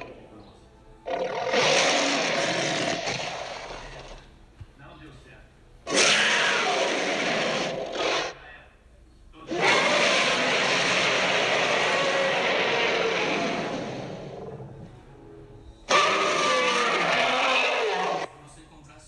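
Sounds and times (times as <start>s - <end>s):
monster roar: 1.1s - 4.2s, 5.9s - 8.4s, 9.5s - 14.9s, 15.9s - 18.3s.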